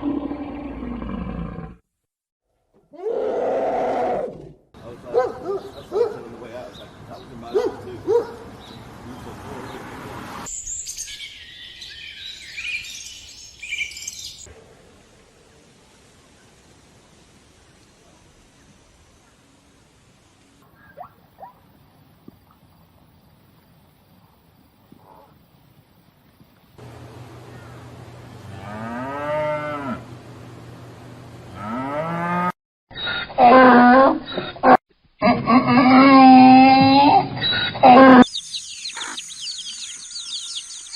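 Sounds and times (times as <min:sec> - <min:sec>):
songbird chirping and trilling: 0:05.1 - 0:14.5, 0:37.4 - 0:40.9
cattle mooing: 0:28.4 - 0:30.0.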